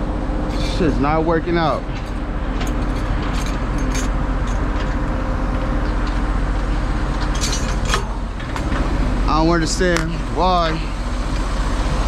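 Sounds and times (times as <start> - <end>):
diesel truck engine idling: 8.1 - 12.0.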